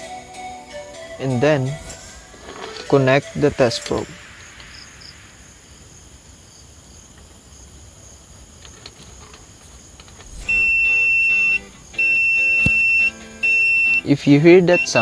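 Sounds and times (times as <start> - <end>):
high-pitched continuity beep: 10.3 - 14.1, 14.7 - 15.0.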